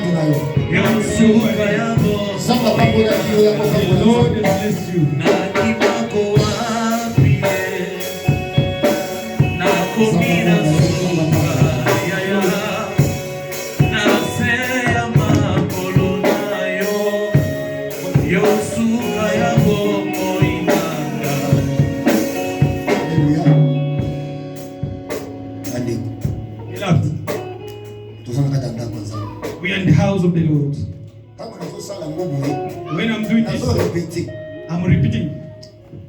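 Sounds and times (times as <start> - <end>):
congregation singing gospel: 0.0 - 27.4
drums keeping a steady beat: 0.0 - 36.0
live band playing: 0.0 - 36.0.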